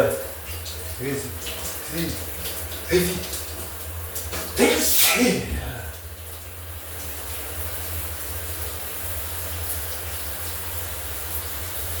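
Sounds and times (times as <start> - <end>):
shower water spray: 1.1 - 6.0.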